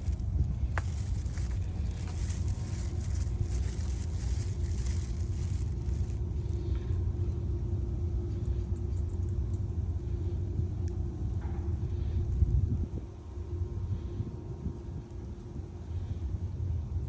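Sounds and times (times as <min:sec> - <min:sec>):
faint constant hum: 0:00.0 - 0:17.0
low rumble: 0:00.0 - 0:17.0.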